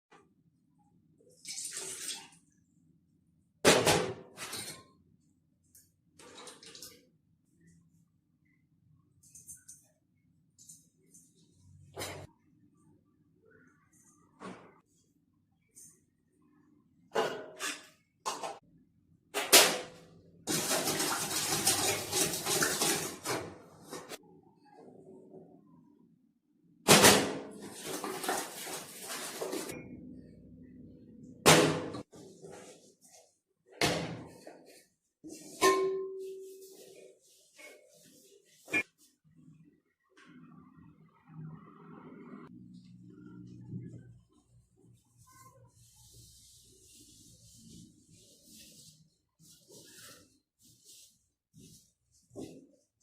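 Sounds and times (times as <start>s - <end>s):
kitchen utensils clattering: 20.5s - 24.2s.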